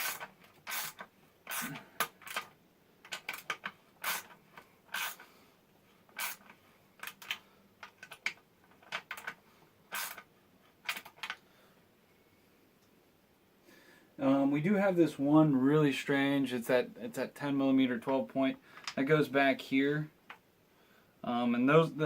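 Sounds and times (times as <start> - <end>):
hand tool clicking and rasping: 0.0 - 2.5, 3.1 - 5.3, 6.1 - 9.3.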